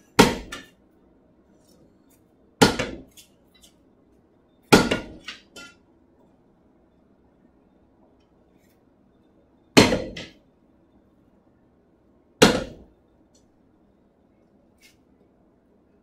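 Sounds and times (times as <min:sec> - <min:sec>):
hammer striking steel on anvil: 0:12.4 - 0:12.9.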